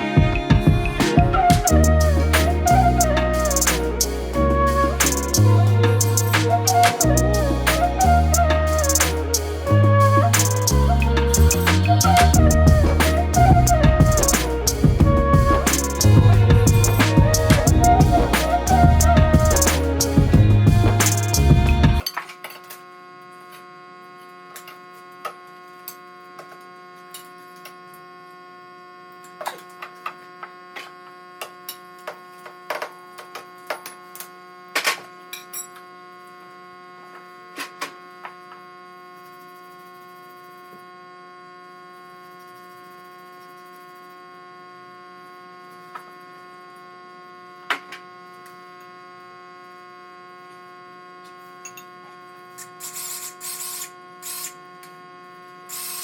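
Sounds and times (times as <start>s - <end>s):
steady hum: 0.0s - 22.0s.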